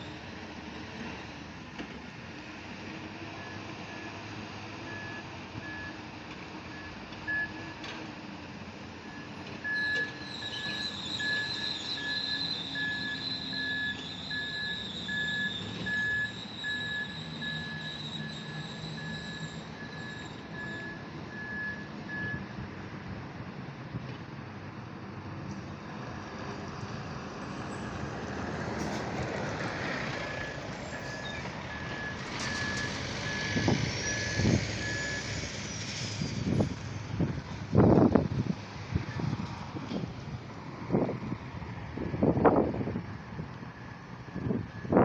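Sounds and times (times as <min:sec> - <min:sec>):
reversing alarm beeping: 0:09.1 - 0:22.5, 0:30.3 - 0:35.4, 0:43.7 - 0:45.0
high squeal: 0:09.8 - 0:21.0, 0:30.4 - 0:37.1.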